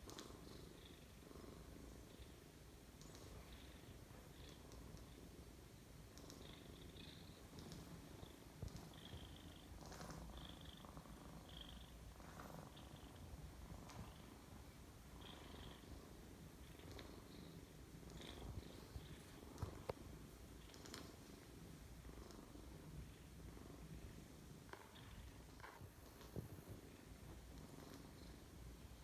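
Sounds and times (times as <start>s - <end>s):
faint ticks: 0.0s - 1.0s, 3.0s - 5.2s, 6.1s - 13.2s, 16.7s - 20.0s, 20.6s - 21.4s
cat purring: 0.0s - 29.0s.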